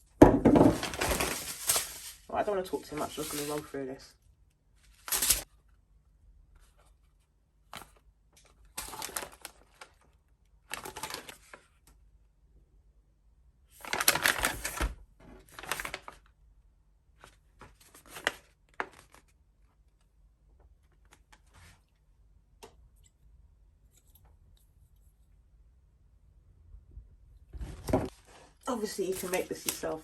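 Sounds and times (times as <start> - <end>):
packaging crinkling and rustling: 0.6 - 3.7, 4.8 - 5.5, 6.6 - 12.0, 13.8 - 16.3, 17.2 - 20.1, 28.8 - 30.0.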